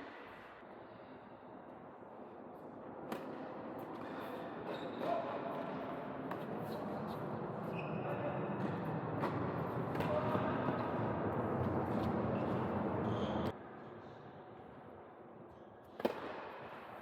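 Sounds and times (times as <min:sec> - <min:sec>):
echoing court noise: 0:03.0 - 0:13.6
shoe squeaks: 0:04.7 - 0:05.2, 0:07.6 - 0:08.4, 0:12.4 - 0:13.5.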